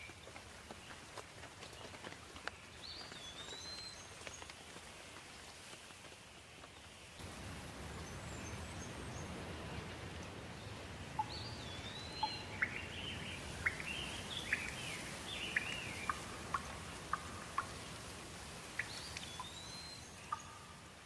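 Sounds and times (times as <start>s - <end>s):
rain falling: 0.0s - 21.0s
faint high bird calls: 11.2s - 18.0s, 18.8s - 21.0s.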